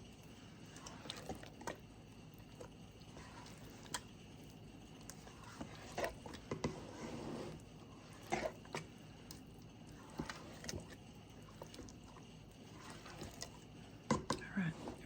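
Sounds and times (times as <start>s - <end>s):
thick mixture squishing: 0.0s - 15.0s
spatula scraping a bowl: 5.1s - 9.0s, 9.9s - 11.0s, 12.6s - 13.6s.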